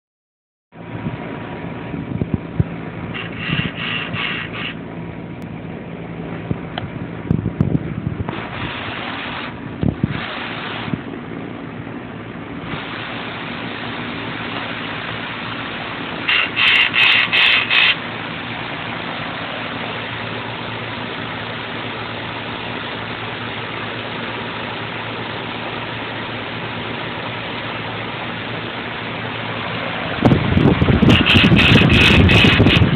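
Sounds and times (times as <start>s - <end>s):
quick high-pitched pulses: 16.3s - 18.0s.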